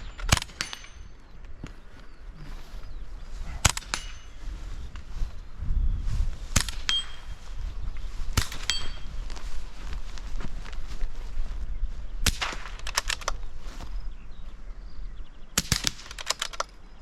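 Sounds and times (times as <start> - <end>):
rifle shots: 0.0 - 1.1, 3.6 - 4.4, 6.5 - 7.3, 8.4 - 9.0, 12.2 - 13.4, 15.6 - 16.7
bullet ringing on steel target: 0.0 - 1.3, 3.7 - 4.4, 6.6 - 7.4, 8.4 - 9.2.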